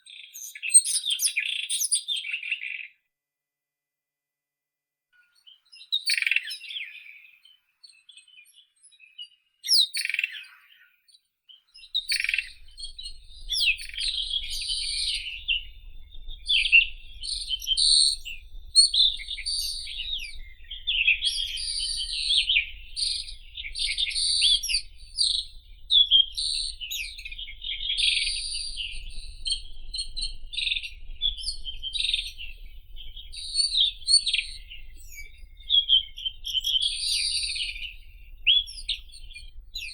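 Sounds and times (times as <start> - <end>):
bird singing: 5.2 - 39.9
low rumble: 12.1 - 39.9.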